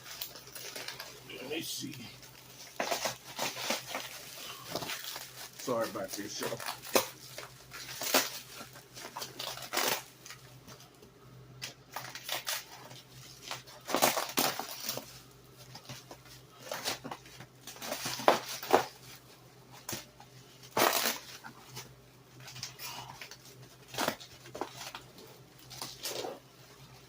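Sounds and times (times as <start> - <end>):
packing material rustling: 0.0 - 11.0, 11.6 - 27.0.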